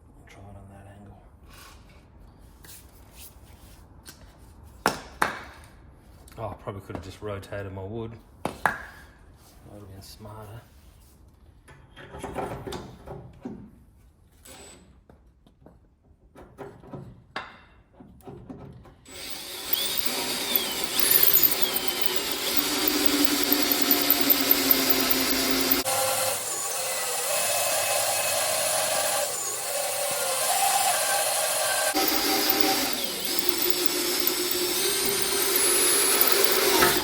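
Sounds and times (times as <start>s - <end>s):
drill bit squealing on metal: 19.1s - 37.0s
power drill cutting into bolt: 19.1s - 37.0s.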